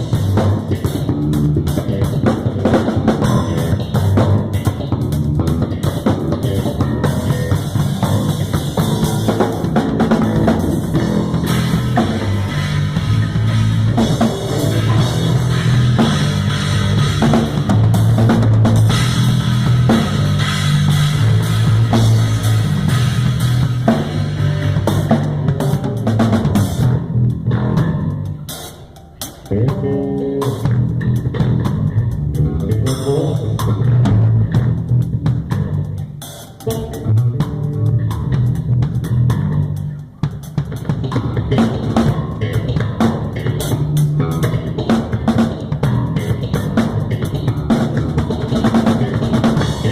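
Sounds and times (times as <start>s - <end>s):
drum kit groove: 0.0s - 49.9s
electric bass guitar: 0.0s - 49.9s.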